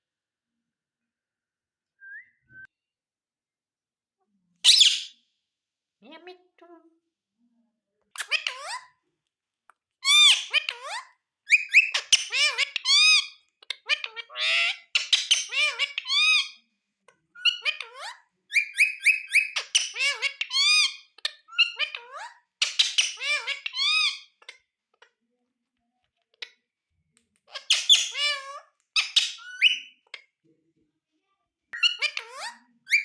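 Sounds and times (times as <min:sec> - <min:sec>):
parakeet chattering calls: 0:04.7 - 0:05.1, 0:10.0 - 0:16.6, 0:27.5 - 0:30.0.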